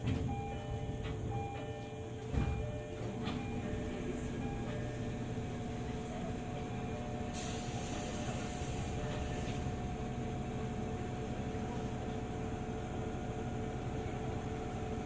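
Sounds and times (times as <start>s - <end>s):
electric train low rumble: 0.0s - 15.0s
hiss: 7.3s - 9.7s.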